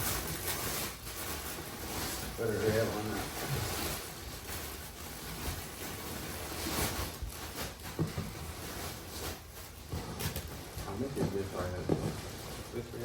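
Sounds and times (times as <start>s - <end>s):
clothing rustling: 0.0s - 13.0s.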